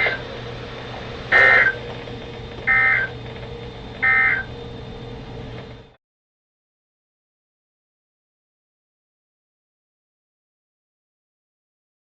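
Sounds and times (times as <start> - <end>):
radio receiver low hum: 0.0 - 6.0
buzzy digital tone bursts: 1.3 - 1.8.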